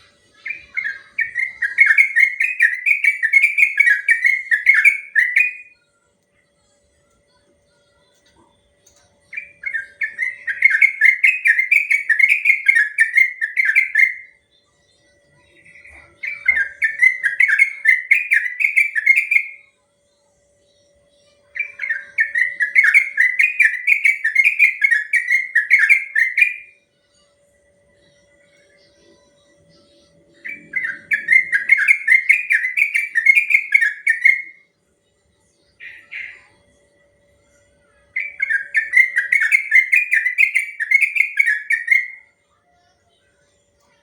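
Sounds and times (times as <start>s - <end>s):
faint steady hum: 0.0s - 44.0s
bird singing bubbling whistles: 30.4s - 34.6s.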